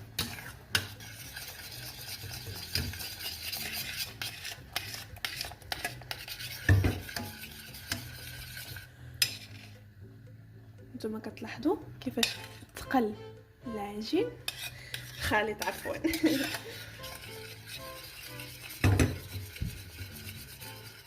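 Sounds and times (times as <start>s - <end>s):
spoon stirring thick sauce: 0.0s - 9.8s, 12.2s - 12.7s, 14.4s - 21.0s
spoon knocking against pan: 18.8s - 19.4s.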